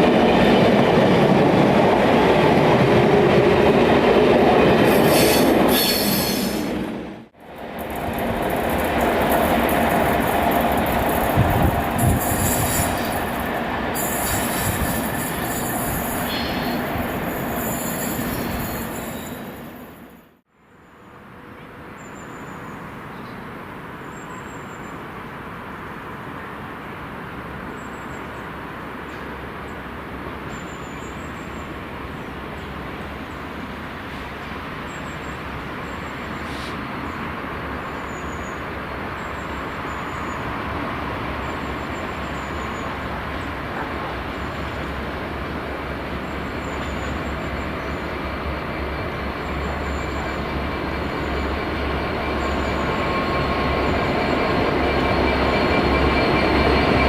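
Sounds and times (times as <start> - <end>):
freight train rumbling: 0.0 - 20.4, 24.8 - 57.0.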